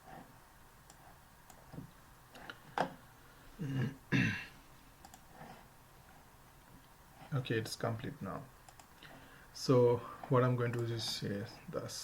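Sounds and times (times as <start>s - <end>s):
computer mouse clicks: 0.8s - 2.9s, 5.0s - 5.5s, 8.6s - 9.2s, 10.6s - 11.3s
man clearing his throat: 3.6s - 4.6s.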